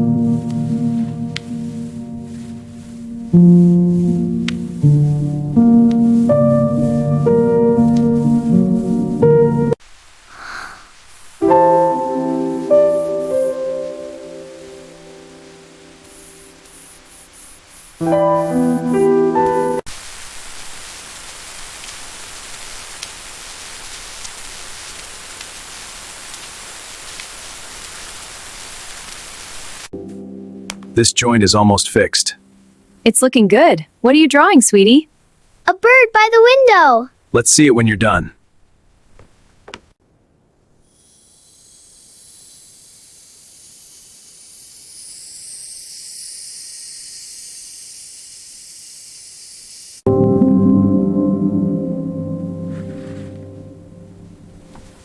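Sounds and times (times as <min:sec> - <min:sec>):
steady rain hiss: 0:00.0 - 0:30.0, 0:30.6 - 0:50.1, 0:52.7 - 0:55.0
rain drop ticks: 0:00.4 - 0:01.5, 0:04.4 - 0:04.7, 0:20.9 - 0:28.2.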